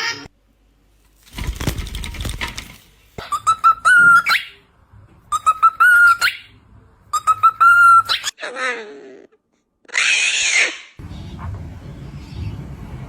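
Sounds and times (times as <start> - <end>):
pet bird whistling: 3.2 - 4.6, 5.3 - 6.5, 7.1 - 8.3.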